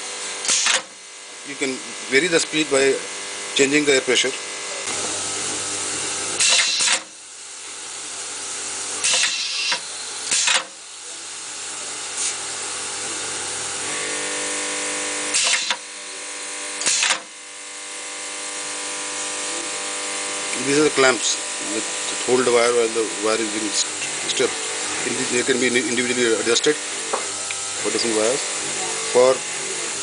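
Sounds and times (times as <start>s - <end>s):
steady machine hum: 0.0s - 30.0s
sharp bursts of air: 0.4s - 0.9s, 6.4s - 7.1s, 9.0s - 10.6s, 12.2s - 12.4s, 15.3s - 15.8s, 16.8s - 17.2s.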